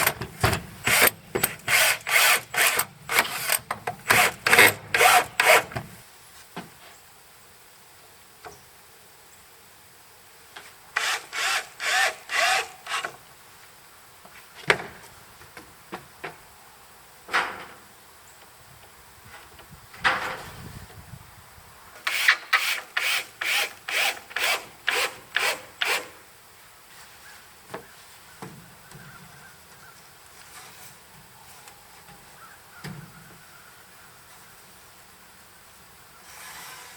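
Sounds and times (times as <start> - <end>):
hand saw cutting wood: 0.0 - 5.9, 11.0 - 13.2, 22.0 - 26.2, 36.2 - 36.9.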